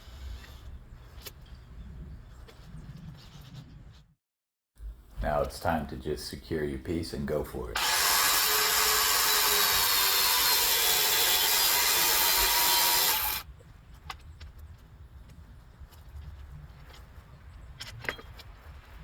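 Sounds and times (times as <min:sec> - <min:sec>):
circular saw cutting board: 0:07.8 - 0:13.4.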